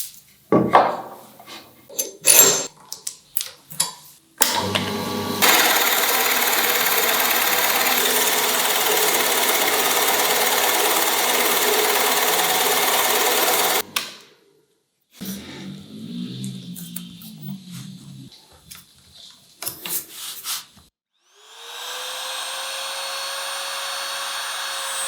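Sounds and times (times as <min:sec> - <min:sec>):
woodworking power tool running: 0:04.4 - 0:14.0, 0:21.3 - 0:25.0.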